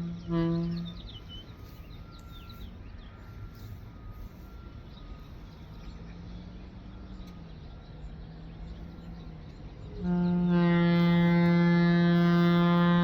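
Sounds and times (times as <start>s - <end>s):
locomotive air horn blast: 0.0s - 2.7s, 9.9s - 13.0s.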